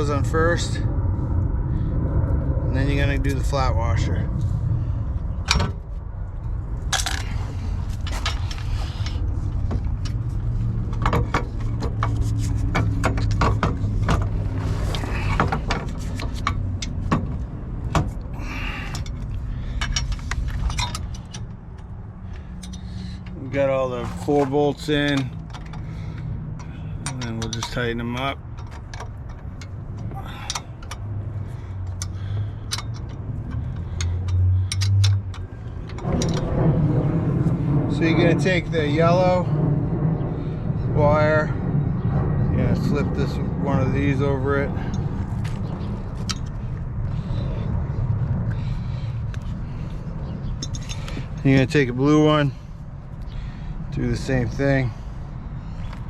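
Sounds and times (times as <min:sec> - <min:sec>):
low hum: 0:00.0 - 0:56.0
low rumble: 0:00.0 - 0:56.0
metal bolts clinking: 0:18.9 - 0:21.6, 0:26.6 - 0:31.1, 0:31.9 - 0:36.5, 0:50.5 - 0:51.8.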